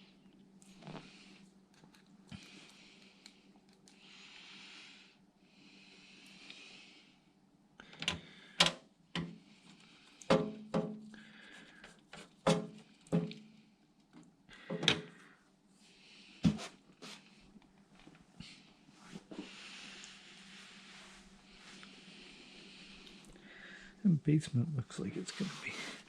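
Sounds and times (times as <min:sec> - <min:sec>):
computer hardware clicks and knocks: 0:12.5 - 0:13.4.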